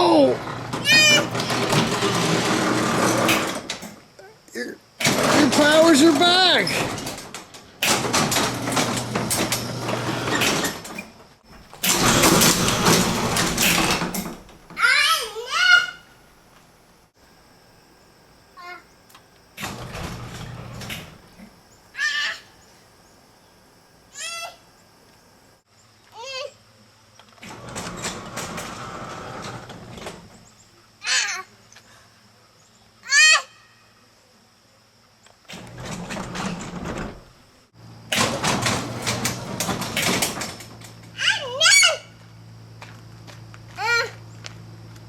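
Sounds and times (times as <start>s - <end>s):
toddler squealing: 0.0s - 1.4s, 22.0s - 22.5s, 41.2s - 42.1s
door rattling along tracks: 0.0s - 4.0s, 5.0s - 15.0s, 19.6s - 21.5s, 27.4s - 30.5s, 35.5s - 37.4s, 38.1s - 42.0s
garage door opener motor hum: 0.0s - 4.0s, 5.0s - 14.8s, 19.6s - 21.5s, 27.4s - 30.5s, 35.5s - 41.6s.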